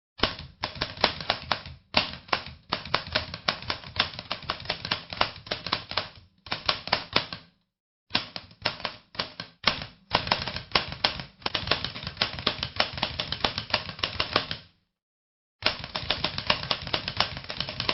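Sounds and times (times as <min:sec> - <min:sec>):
typewriter keys clacking: 0:00.2 - 0:07.4, 0:08.2 - 0:14.6, 0:15.6 - 0:17.9.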